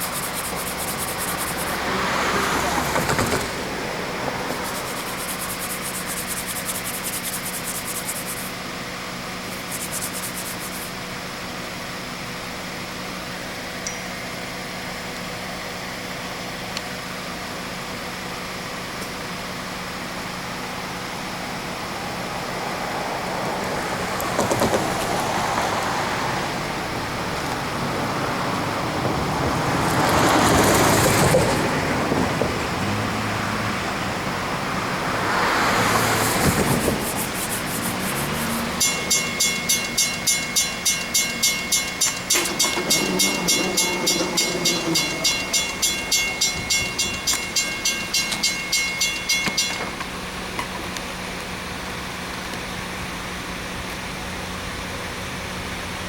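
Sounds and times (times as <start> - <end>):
vehicles passing: 0.0 - 56.0
railroad crossing bell ringing: 13.7 - 15.2, 35.9 - 50.4.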